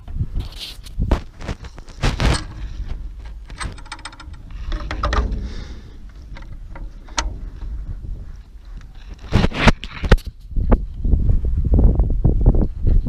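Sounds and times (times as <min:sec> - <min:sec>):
steady low rumble: 0:00.2 - 0:11.9
parts and tools clattering: 0:01.1 - 0:09.9
fast rattle: 0:01.1 - 0:10.3.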